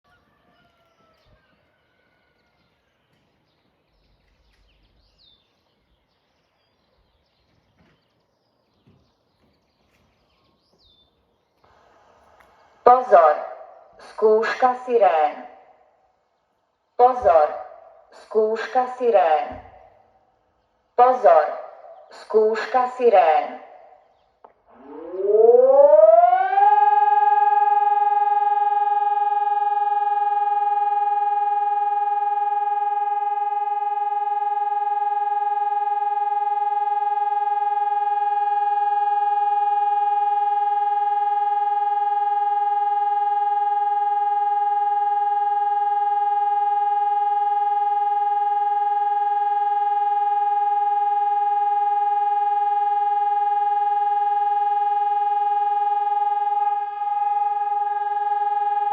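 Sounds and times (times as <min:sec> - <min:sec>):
electronic warning siren: 0:11.6 - 0:16.0, 0:17.0 - 0:58.9.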